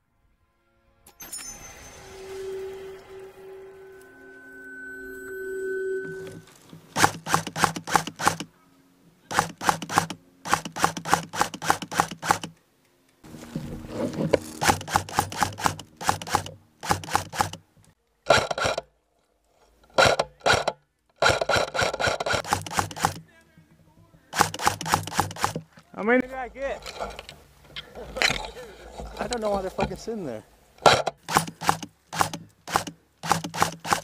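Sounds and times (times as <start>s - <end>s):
electric rifle firing bursts: 7.0s - 8.5s, 9.3s - 12.6s, 14.6s - 17.6s, 20.0s - 23.2s, 24.3s - 25.7s, 30.8s - 34.0s.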